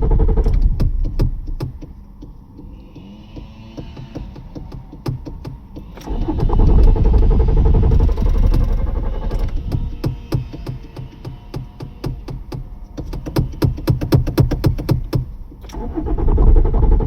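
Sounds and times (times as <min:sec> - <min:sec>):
car engine cranking: 0:00.0 - 0:17.0.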